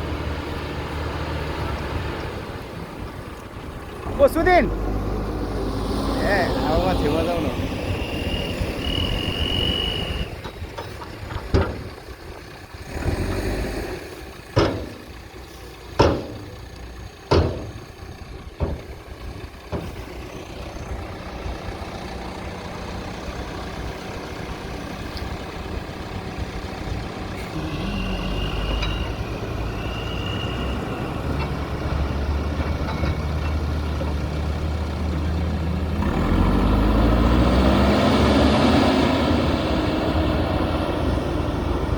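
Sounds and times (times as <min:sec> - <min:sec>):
backhoe diesel engine running: 0:00.0 - 0:41.9
sharp metallic knocks: 0:14.5 - 0:15.3, 0:15.9 - 0:16.7, 0:17.3 - 0:20.1.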